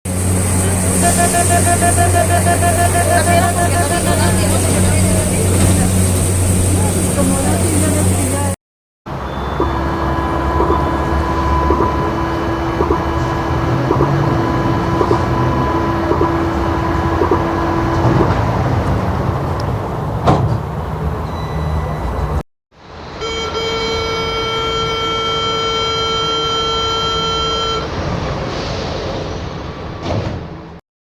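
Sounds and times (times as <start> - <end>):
train low rumble: 0.1 - 30.8
train door buzzer: 0.7 - 6.0, 9.2 - 18.1, 23.1 - 28.0
train doors shutting knock: 3.7 - 6.2, 20.2 - 20.8, 30.0 - 30.7.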